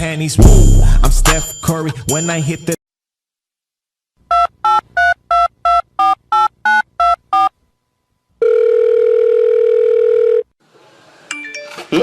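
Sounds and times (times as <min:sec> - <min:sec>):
telephone ringing tone: 0:08.4 - 0:10.5.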